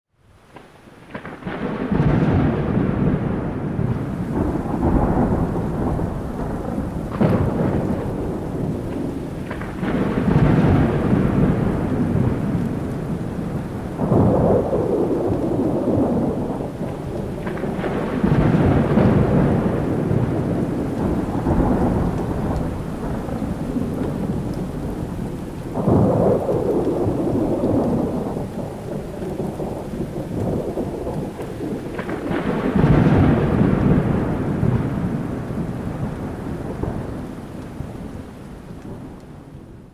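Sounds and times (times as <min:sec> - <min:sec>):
steady rain: 0:00.1 - 0:39.9
thunder rolling: 0:01.0 - 0:39.9.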